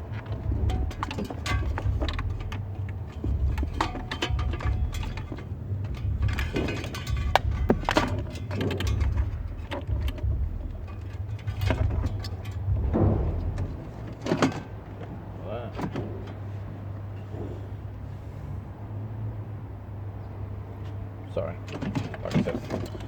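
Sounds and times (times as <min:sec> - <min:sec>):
cable connectors clicking and knocking: 0:00.0 - 0:15.1
steady low rumble: 0:00.0 - 0:15.6.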